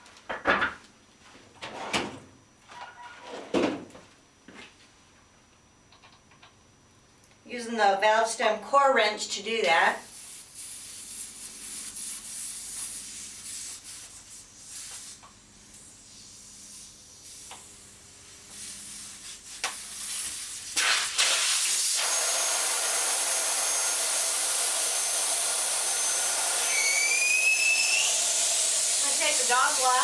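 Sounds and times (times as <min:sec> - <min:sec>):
air hissing out of tyre valve: 0:10.1 - 0:15.2, 0:15.9 - 0:17.7
rising whistle: 0:26.7 - 0:28.2.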